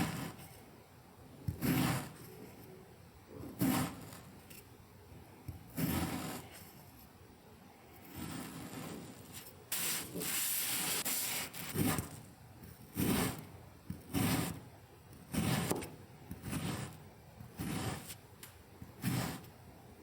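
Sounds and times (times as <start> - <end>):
kinetic sand gritty rubbing: 8.1 - 12.1, 17.6 - 18.2.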